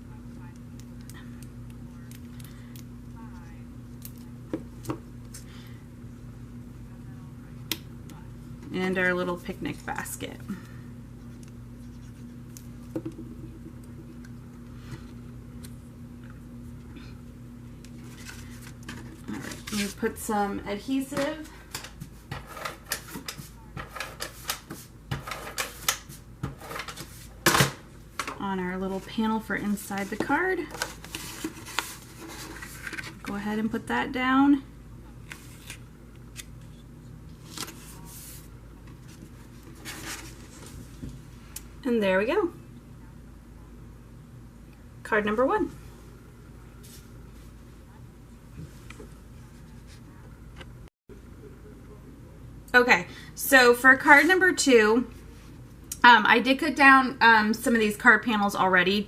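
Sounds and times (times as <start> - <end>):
low electrical hum: 0.0 - 59.0
paper rustle: 30.0 - 33.3, 37.4 - 40.8.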